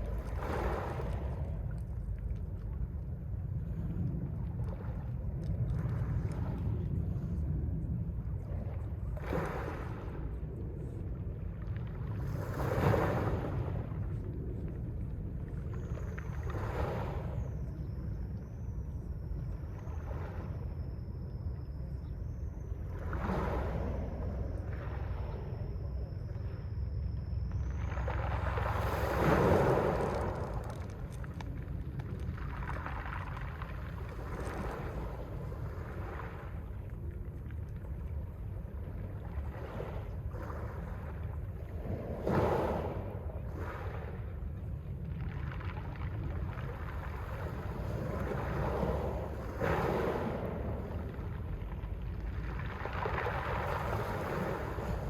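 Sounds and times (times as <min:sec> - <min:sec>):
sea waves breaking on shore: 0:00.0 - 0:01.9, 0:08.6 - 0:11.0, 0:12.1 - 0:14.2, 0:15.8 - 0:17.6, 0:23.0 - 0:26.2, 0:27.4 - 0:37.3, 0:39.2 - 0:55.0
steady low rumble: 0:00.0 - 0:55.0.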